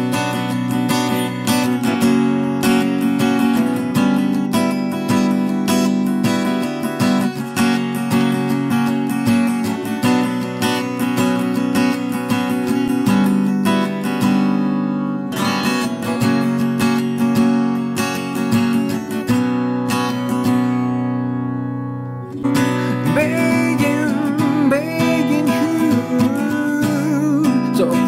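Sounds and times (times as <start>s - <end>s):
acoustic guitar strumming: 0.0s - 28.0s
person singing: 22.4s - 28.0s.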